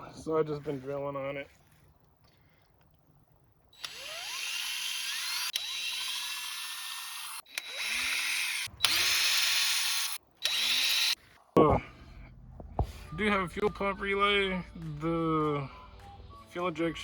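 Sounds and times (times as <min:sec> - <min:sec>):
electric drill whining: 0:03.8 - 0:11.2.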